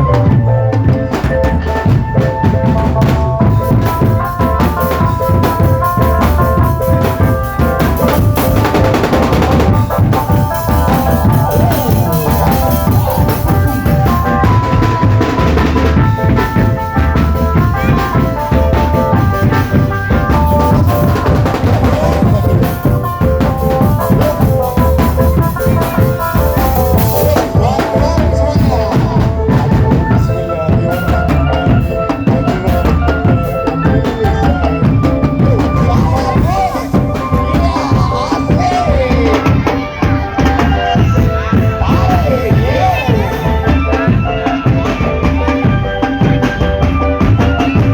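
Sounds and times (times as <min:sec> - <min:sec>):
bass drum beats: 0:00.0 - 0:47.9
melody of held notes: 0:00.0 - 0:47.9
snare drum beats: 0:00.9 - 0:30.0.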